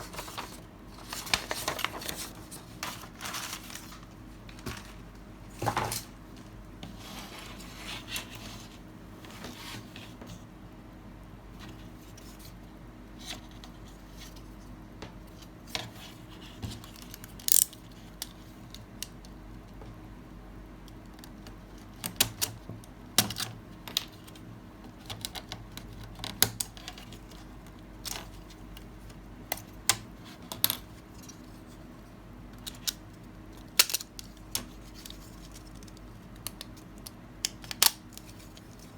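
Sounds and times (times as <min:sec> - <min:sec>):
low steady hum: 0:00.0 - 0:38.9
plastic parts clicking: 0:16.9 - 0:19.2, 0:32.6 - 0:38.9.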